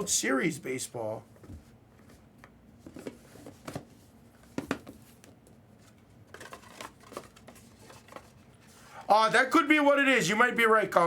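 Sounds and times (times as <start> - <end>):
packaging rustling: 4.8 - 8.8.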